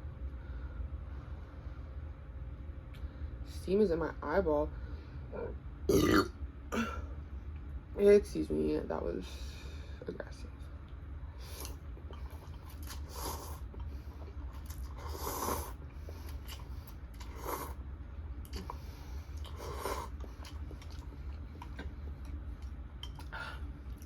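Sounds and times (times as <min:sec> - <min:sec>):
low hum: 0:00.0 - 0:24.0
breathy mouth and nose sounds: 0:11.4 - 0:17.8.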